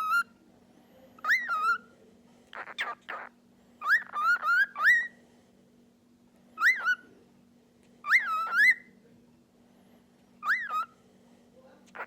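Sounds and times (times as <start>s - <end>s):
cockatiel whistling: 3.8s - 5.2s, 6.6s - 7.1s, 8.0s - 8.9s, 10.4s - 11.0s.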